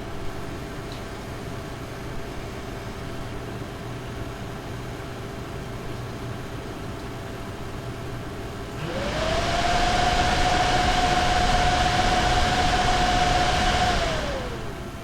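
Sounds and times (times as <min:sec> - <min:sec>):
graphics card fan whooshing: 0:08.8 - 0:15.0.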